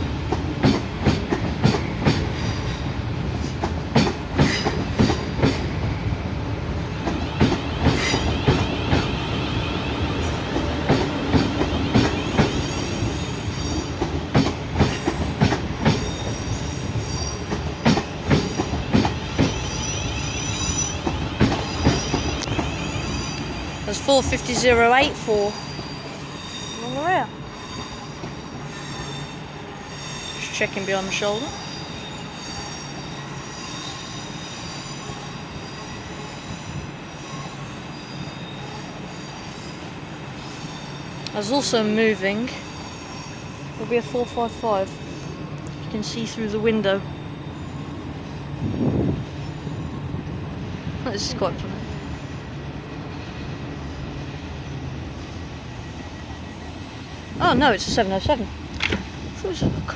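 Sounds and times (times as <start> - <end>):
train rumbling: 0.0 - 59.9
train wheels clacking over rail joints: 0.3 - 2.7, 3.4 - 5.7, 7.0 - 9.2, 10.6 - 12.7, 13.8 - 16.2, 17.5 - 19.6, 21.0 - 22.7
faint wheel squeal: 25.4 - 41.1.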